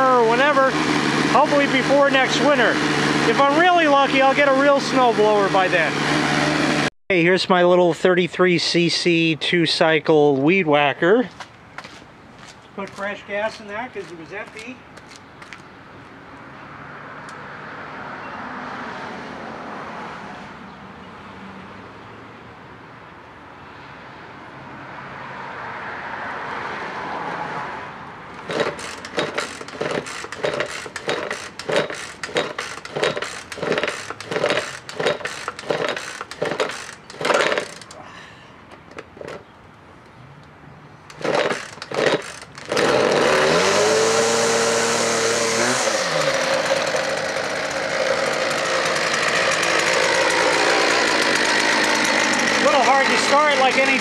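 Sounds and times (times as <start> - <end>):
string trimmer engine revving: 0.0 - 6.9, 28.4 - 38.0, 41.1 - 54.0
string trimmer pull-start cranking: 0.0 - 6.9, 28.4 - 38.0, 38.7 - 39.5, 41.1 - 54.0.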